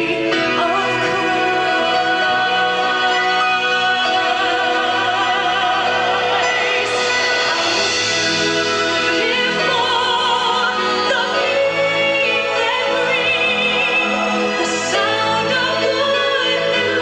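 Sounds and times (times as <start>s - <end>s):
voices singing with vibrato: 0.0s - 17.0s
orchestral accompaniment: 0.1s - 17.0s.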